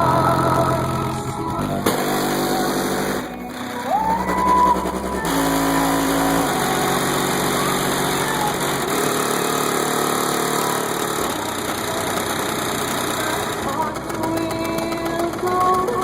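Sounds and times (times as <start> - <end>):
deep bass: 0.0 - 16.0
loud car stereo music: 0.0 - 16.0.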